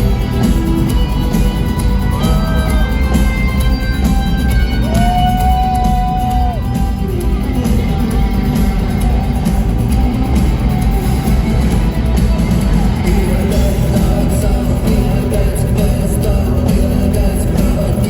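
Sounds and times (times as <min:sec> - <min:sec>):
live rock band: 0:00.0 - 0:18.0
person singing: 0:12.6 - 0:18.0.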